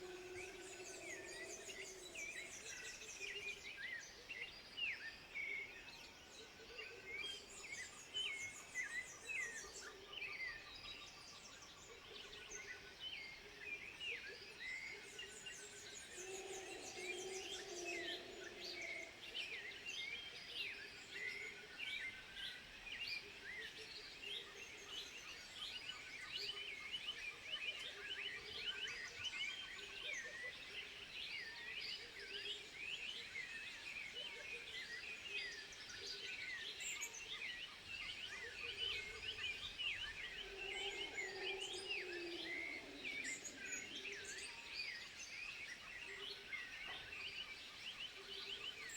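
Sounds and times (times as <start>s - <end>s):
lower longer animal call: 40.3s - 44.3s.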